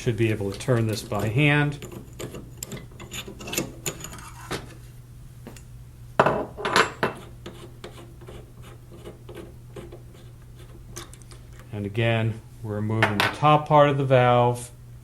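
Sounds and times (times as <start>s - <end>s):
rasping metal scrape: 0.5s - 4.8s, 7.1s - 10.8s.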